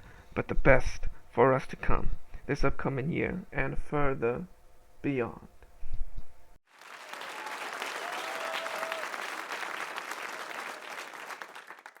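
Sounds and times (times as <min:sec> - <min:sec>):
audience applauding: 0:06.7 - 0:12.0.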